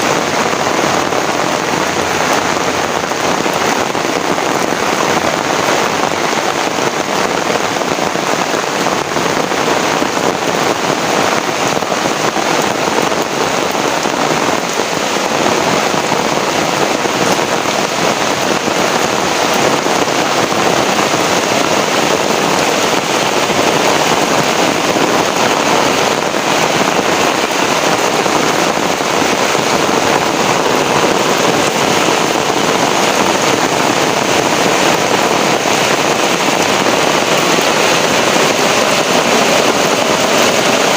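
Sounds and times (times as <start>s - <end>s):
heavy rain pouring: 0.0s - 40.9s.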